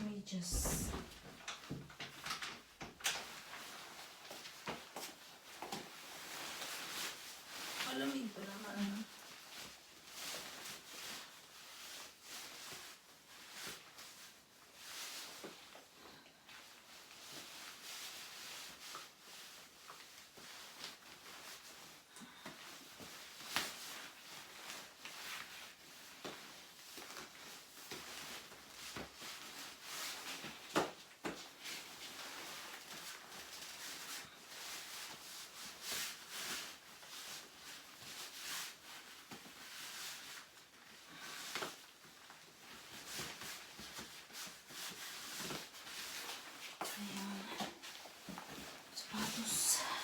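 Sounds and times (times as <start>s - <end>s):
close rustling and scuffing: 0.0s - 1.4s, 22.6s - 50.0s.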